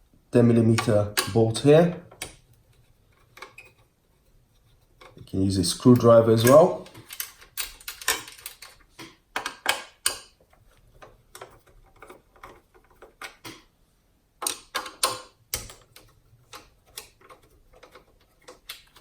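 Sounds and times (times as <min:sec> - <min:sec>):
hand tool clicks and taps: 0:09.0 - 0:10.4.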